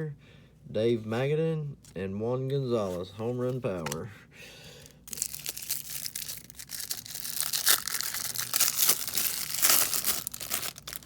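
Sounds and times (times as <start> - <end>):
wrapper tearing and crinkling: 5.1 - 11.0.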